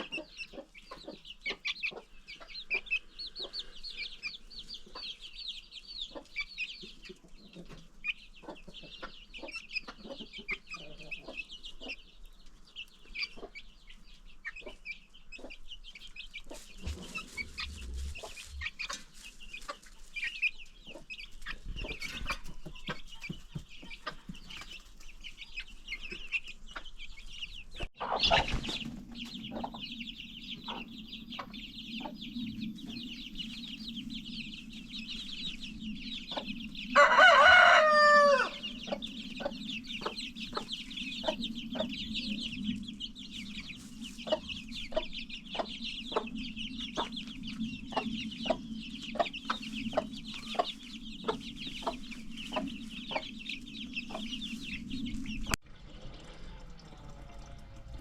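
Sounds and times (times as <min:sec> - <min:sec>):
hens clucking: 0:00.0 - 0:05.3, 0:06.0 - 0:13.7, 0:14.4 - 0:27.0, 0:28.0 - 0:34.2, 0:35.7 - 0:58.0
chicks cheeping: 0:00.0 - 0:58.0
rooster crowing: 0:37.0 - 0:38.8.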